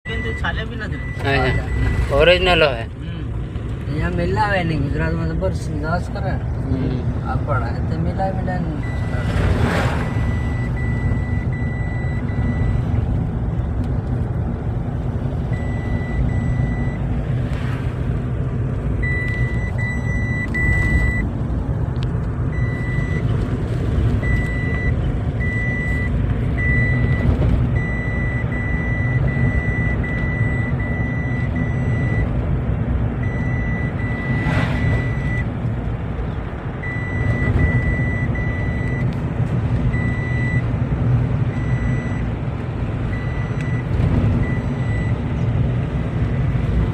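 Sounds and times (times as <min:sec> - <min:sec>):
reversing alarm beeping: 0:00.1 - 0:02.1, 0:08.8 - 0:09.2, 0:10.0 - 0:12.9, 0:15.5 - 0:17.0, 0:19.0 - 0:21.2, 0:22.5 - 0:23.2, 0:24.2 - 0:32.3, 0:33.2 - 0:35.5, 0:36.8 - 0:39.1, 0:39.9 - 0:40.6, 0:43.1 - 0:45.2
heavy vehicle engine running: 0:08.8 - 0:46.9.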